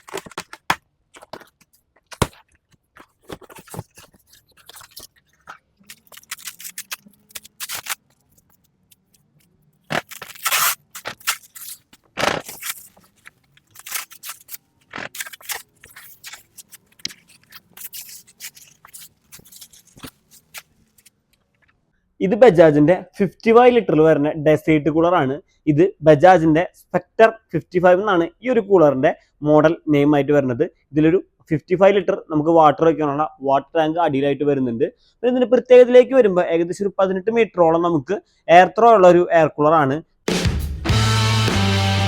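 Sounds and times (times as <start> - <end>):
cardboard and plastic rustling: 0.0 - 21.6.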